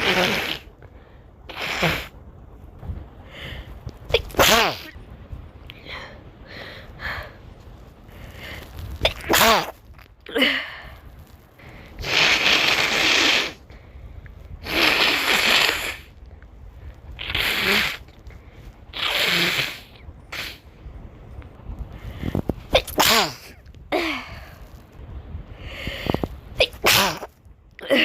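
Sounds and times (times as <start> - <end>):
person blowing nose: 0.0 - 0.8, 1.5 - 2.1, 9.0 - 9.8, 12.0 - 13.6, 14.6 - 16.1, 17.2 - 18.1, 18.9 - 20.6, 22.7 - 23.6
person sneezing: 4.1 - 4.9, 9.0 - 10.7, 22.7 - 24.5, 26.6 - 28.0.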